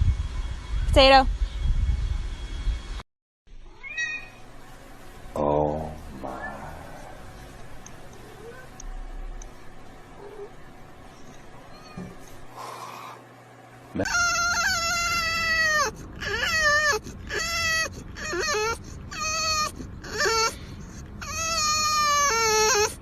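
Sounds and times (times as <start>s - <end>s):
pet animal crying out: 3.7s - 4.4s, 14.0s - 23.0s.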